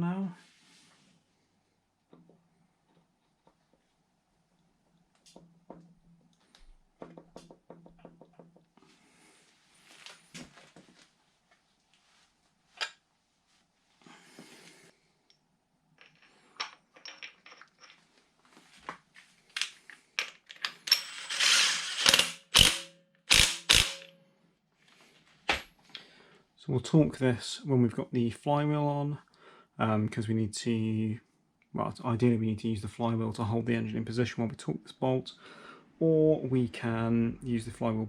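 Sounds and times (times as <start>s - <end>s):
metal clinks and knocks: 15.9s - 18.1s
socket ratchet clicking: 21.3s - 24.1s.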